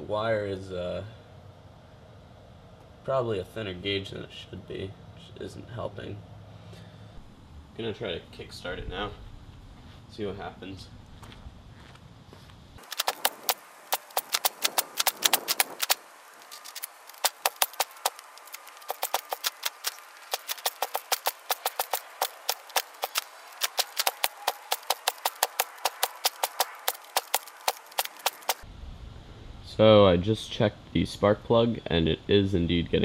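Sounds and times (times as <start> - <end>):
spark plug snapping: 12.8 - 28.6.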